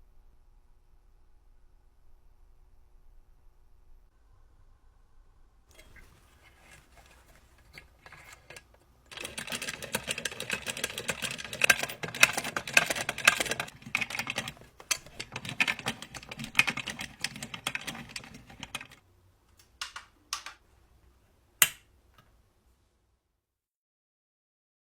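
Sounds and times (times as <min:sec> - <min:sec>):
sewing machine ticking: 0:08.0 - 0:19.0.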